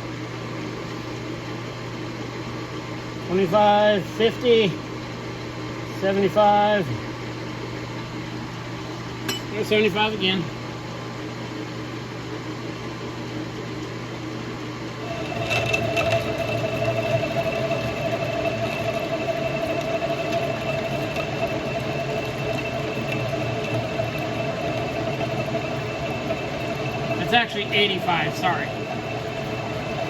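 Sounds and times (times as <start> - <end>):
lathe motor hum: 14.8 - 30.0
high-pitched cutting whine: 15.0 - 30.0.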